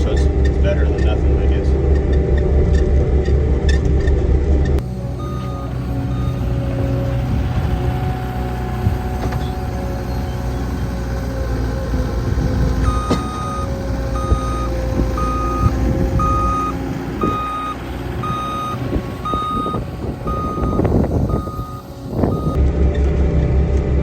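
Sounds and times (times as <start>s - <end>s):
skid steer engine under load: 0.0s - 24.0s
reversing alarm beeping: 5.2s - 8.3s, 12.8s - 22.6s.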